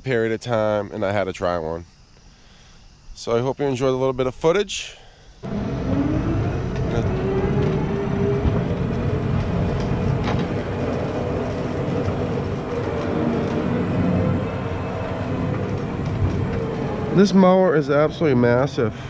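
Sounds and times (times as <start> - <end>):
electric riding mower whirring: 5.4 - 18.8.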